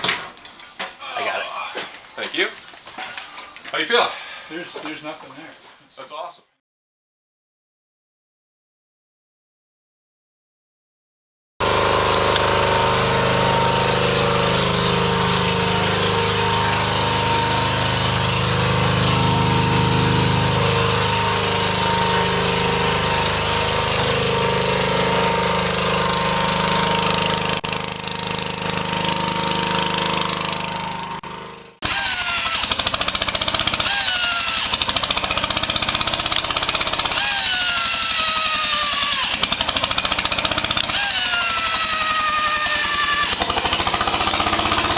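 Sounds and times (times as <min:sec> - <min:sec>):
engine-driven power tool running: 0:11.6 - 0:44.9
rising whine: 0:11.8 - 0:27.4.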